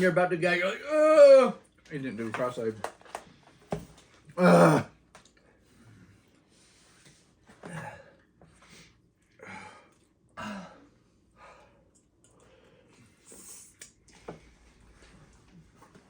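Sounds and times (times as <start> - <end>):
quiet breaths: 5.3 - 16.0.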